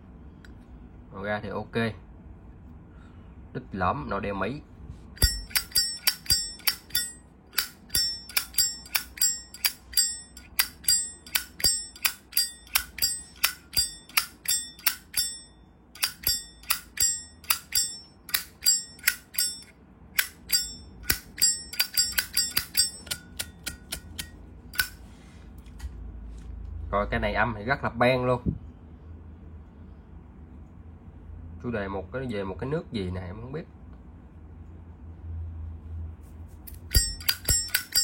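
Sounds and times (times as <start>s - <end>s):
lighter lid clinking: 36.9s - 38.0s.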